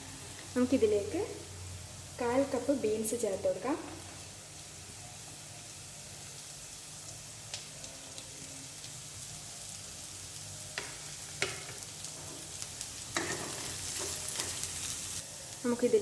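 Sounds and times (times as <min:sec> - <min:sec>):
vegetables sizzling in hot oil: 0:00.0 - 0:16.0
spatula tapping on pan: 0:10.8 - 0:11.8.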